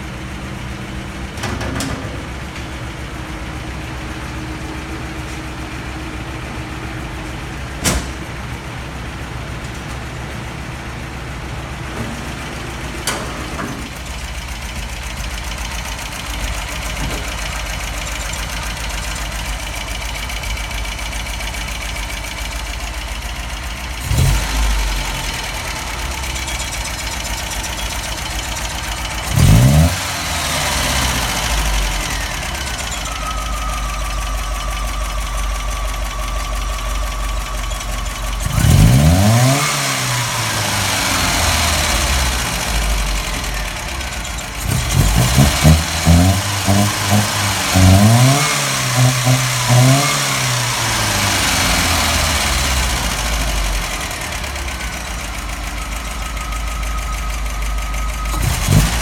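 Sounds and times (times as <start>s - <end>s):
car engine idling and revving: 0.0s - 59.0s
high whine: 13.5s - 59.0s.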